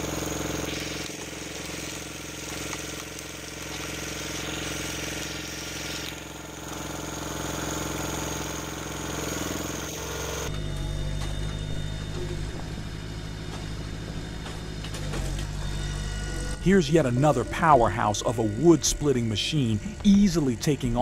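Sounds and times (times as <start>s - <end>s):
heavy machinery engine running: 0.0s - 21.0s
mechanical noise: 9.4s - 21.0s.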